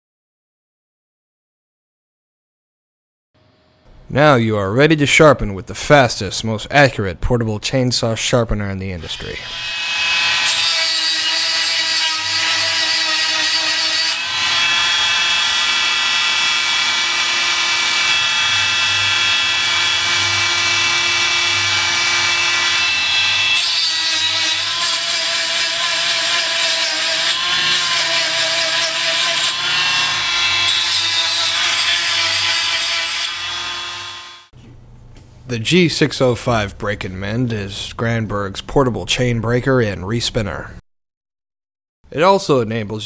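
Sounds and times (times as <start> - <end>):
chain grinder whining: 14.0 - 34.5.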